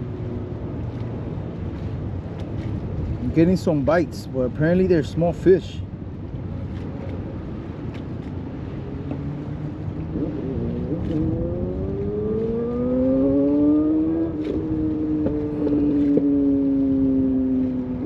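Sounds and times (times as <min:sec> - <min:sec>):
motorboat engine throttling up: 0:09.0 - 0:18.0.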